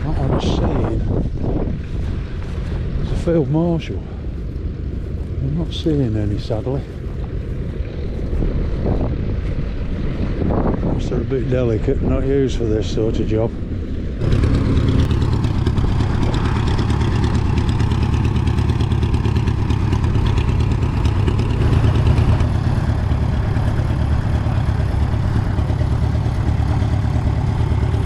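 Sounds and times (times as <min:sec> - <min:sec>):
tractor engine rumbling: 0:00.0 - 0:28.0.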